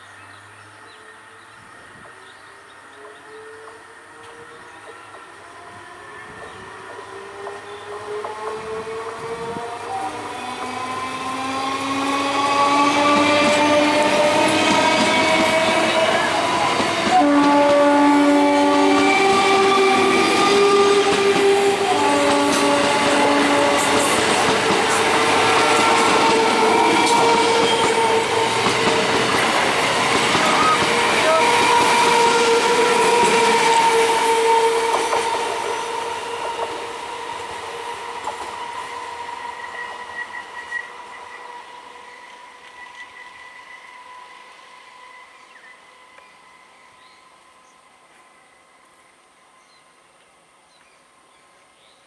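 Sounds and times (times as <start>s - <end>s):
steady train tones: 0.4s - 52.0s
train rolling rumble: 1.8s - 43.4s.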